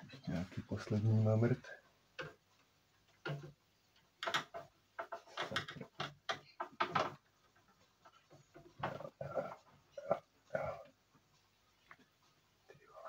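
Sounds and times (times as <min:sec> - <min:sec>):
computer hardware clicks and knocks: 0:04.2 - 0:07.2.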